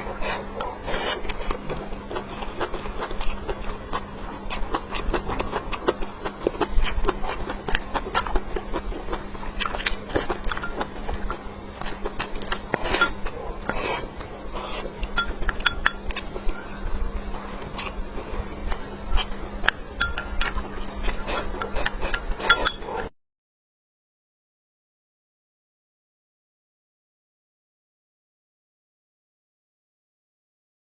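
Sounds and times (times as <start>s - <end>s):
chewing and mouth smacks: 0.0s - 23.1s
faint steady hum: 0.0s - 23.1s
utensils clinking against bowl: 9.6s - 14.0s, 15.0s - 16.6s, 18.7s - 23.1s.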